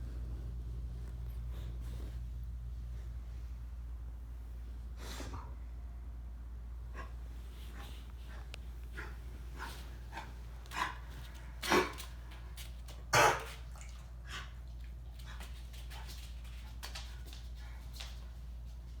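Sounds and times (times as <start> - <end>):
dog coughing: 13.1 - 13.6.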